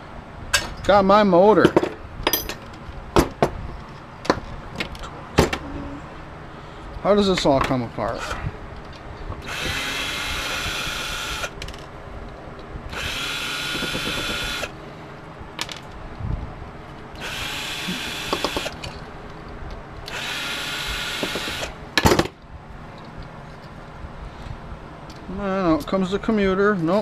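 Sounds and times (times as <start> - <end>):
power drill bursts: 9.4 - 11.6, 12.9 - 14.8, 17.2 - 18.8, 20.1 - 21.8.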